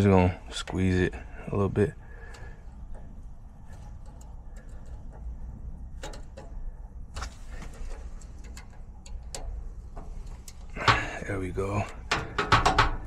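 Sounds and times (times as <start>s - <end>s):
steady low rumble: 0.0s - 13.0s
sharp metallic clicks and taps: 6.0s - 6.6s, 7.8s - 11.2s, 11.8s - 13.0s.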